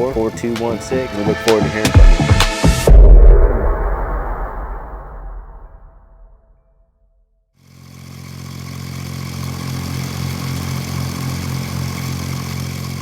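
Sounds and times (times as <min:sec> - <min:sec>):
engine running steadily: 0:07.6 - 0:13.0.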